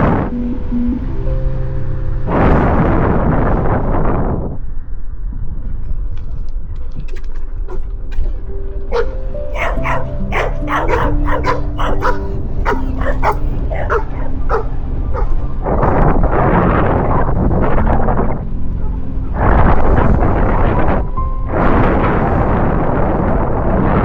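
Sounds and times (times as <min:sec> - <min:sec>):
background music with held notes: 0:00.0 - 0:04.4, 0:07.6 - 0:24.0
dog barking: 0:08.9 - 0:15.4.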